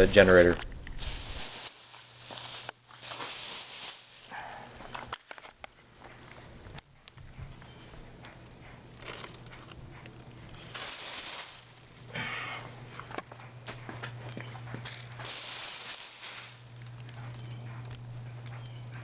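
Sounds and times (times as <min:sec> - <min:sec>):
steady low hum: 0:00.0 - 0:19.0
plastic wrapping tearing: 0:01.0 - 0:04.3.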